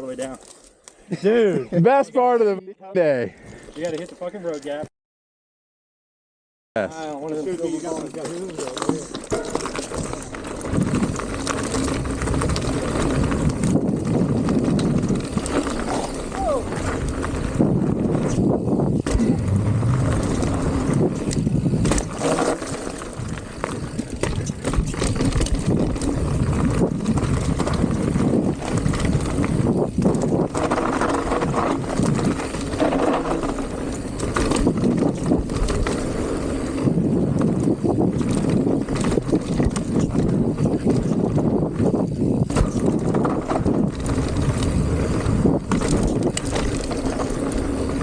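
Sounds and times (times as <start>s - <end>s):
bike knocking and rattling: 7.0s - 48.0s
bike tyres rumbling on dirt: 7.0s - 48.0s
wind buffeting microphone: 9.9s - 48.0s.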